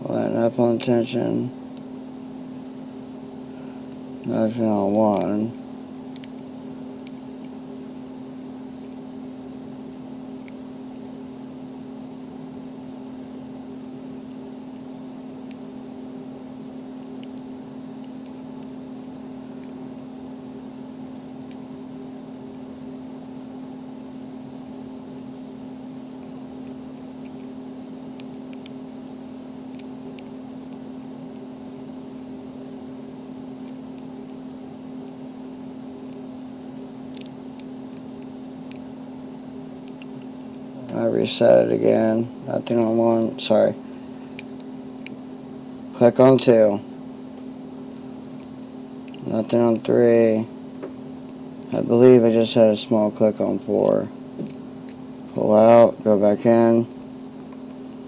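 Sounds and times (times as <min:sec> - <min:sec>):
machine hum: 0:00.0 - 0:58.0.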